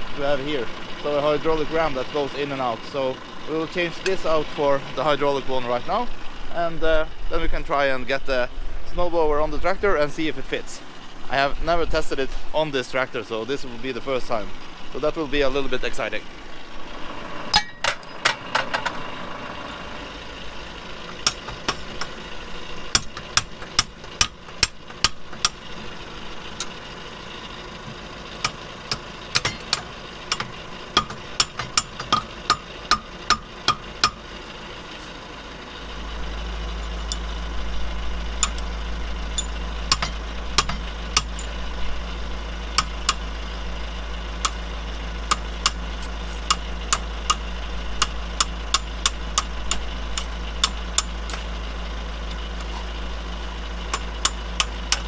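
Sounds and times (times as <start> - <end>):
tractor engine idling: 0.0 - 55.0
metallic clinks and knocks: 21.1 - 22.2, 28.4 - 34.2, 39.3 - 41.6.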